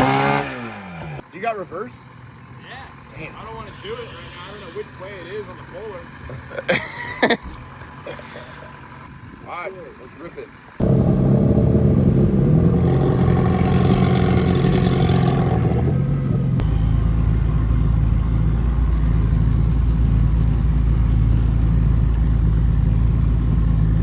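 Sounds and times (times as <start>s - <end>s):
outboard motor running: 10.8s - 24.0s.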